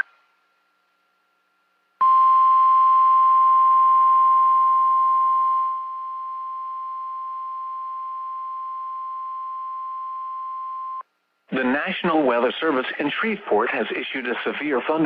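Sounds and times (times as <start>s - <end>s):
faint radio hiss: 11.0s - 15.0s.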